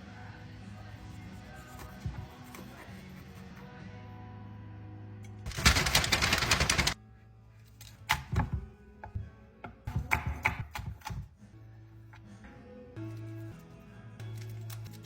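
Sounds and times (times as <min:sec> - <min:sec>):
background music: 0:00.0 - 0:15.0
knife chopping on cutting board: 0:09.9 - 0:11.2.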